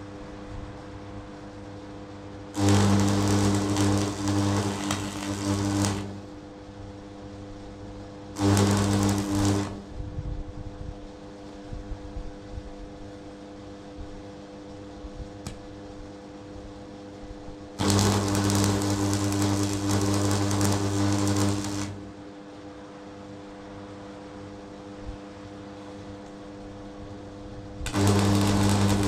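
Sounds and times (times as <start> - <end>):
steady hum: 0.0 - 29.0
electric hammer rattling: 2.6 - 6.3, 8.4 - 9.9, 17.8 - 22.1, 27.9 - 29.0.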